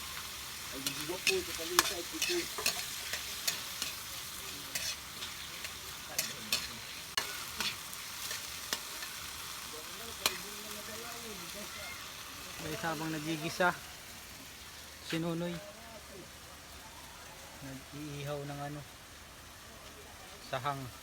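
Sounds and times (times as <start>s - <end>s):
food sizzling in oil: 0.0s - 21.0s
utensil scraping against pan: 0.7s - 9.2s.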